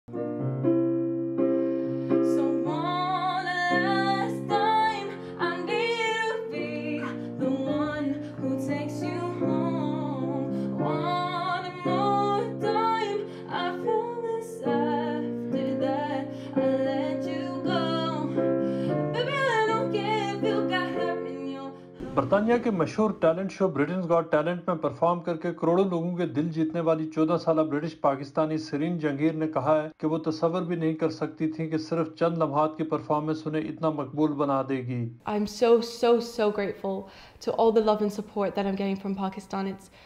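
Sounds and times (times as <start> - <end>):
piano chords: 0.1 - 23.8
woman singing slow melody: 2.1 - 22.2.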